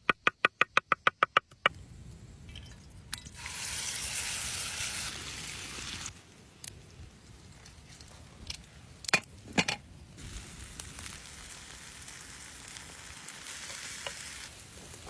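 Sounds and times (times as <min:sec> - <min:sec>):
liquid splashing hiss: 0:03.2 - 0:06.2, 0:10.2 - 0:15.0.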